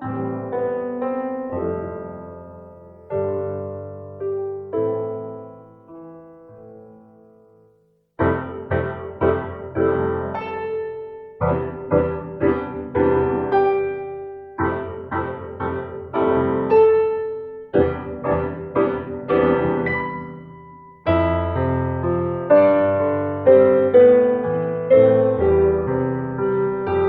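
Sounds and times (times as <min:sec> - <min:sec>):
gentle solo piano melody: 0:00.0 - 0:27.0.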